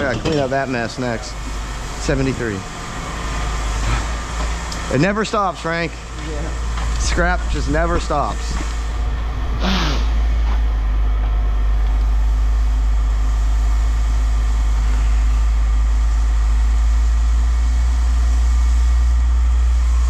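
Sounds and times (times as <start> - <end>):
engine idling: 0.0 - 20.0
burst of noise: 6.8 - 10.8.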